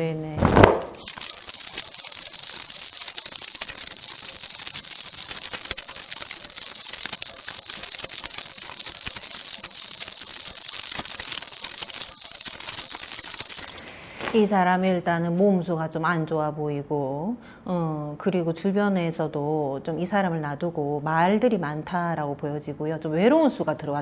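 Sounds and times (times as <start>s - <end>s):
brass bells jingling: 0.7s - 14.5s.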